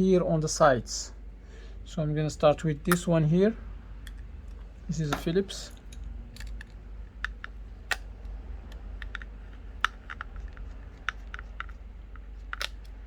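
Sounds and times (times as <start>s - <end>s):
screwdriver clicks and taps: 5.9s - 8.0s, 8.7s - 13.0s.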